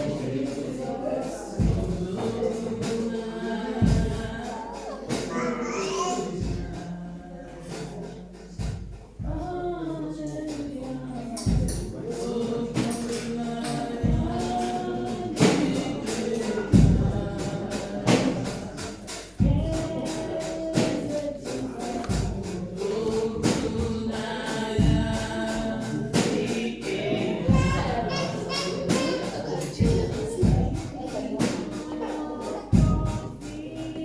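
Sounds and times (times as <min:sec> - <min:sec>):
choir singing gospel song: 0:00.0 - 0:34.0
deep drum hits: 0:22.0 - 0:31.8, 0:32.7 - 0:33.6.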